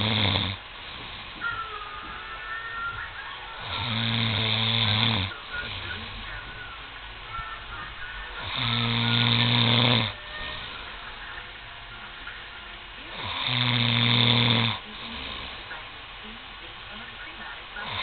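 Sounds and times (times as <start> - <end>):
man snoring: 0.0 - 1.4, 3.6 - 6.4, 8.3 - 10.9, 13.1 - 15.6.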